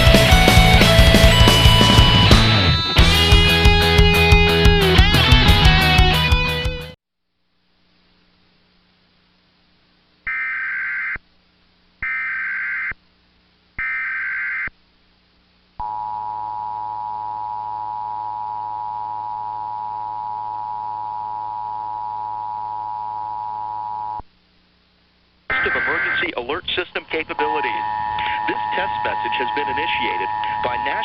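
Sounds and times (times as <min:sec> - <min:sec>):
data tone bursts: 0:25.5 - 0:26.4, 0:27.2 - 0:31.0.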